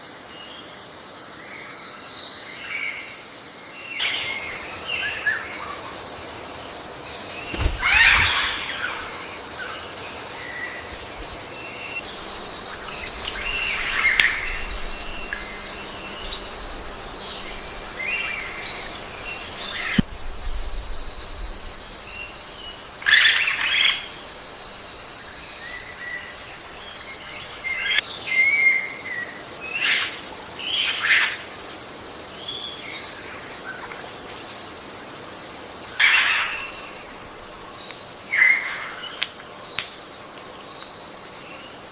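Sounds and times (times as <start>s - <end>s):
high-pitched insect hum: 0.0s - 41.9s
birds chirping and calling: 7.4s - 9.4s.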